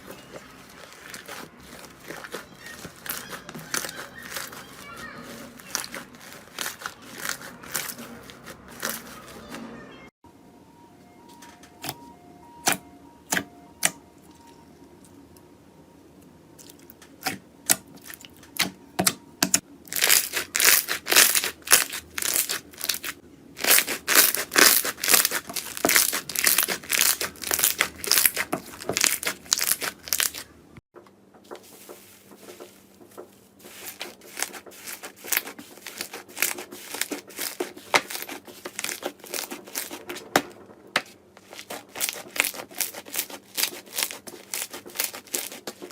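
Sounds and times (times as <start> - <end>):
slime crackling and popping: 5.6 - 9.0, 19.9 - 30.4.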